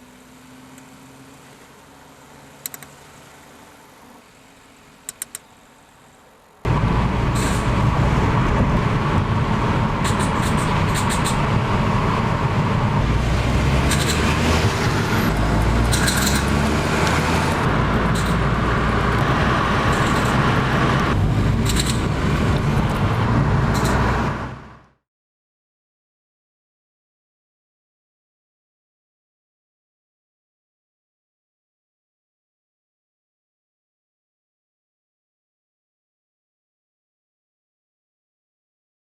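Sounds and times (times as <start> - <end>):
car engine pulling under load: 0.0 - 25.0.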